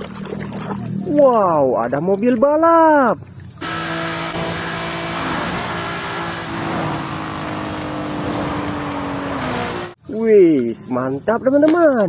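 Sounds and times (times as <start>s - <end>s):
race car engine running: 3.6s - 10.0s.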